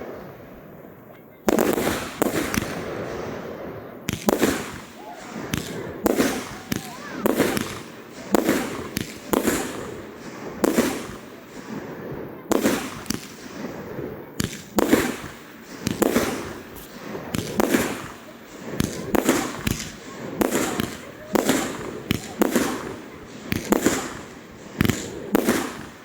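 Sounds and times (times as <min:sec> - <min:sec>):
fireworks bangs echoing: 0:00.0 - 0:26.0.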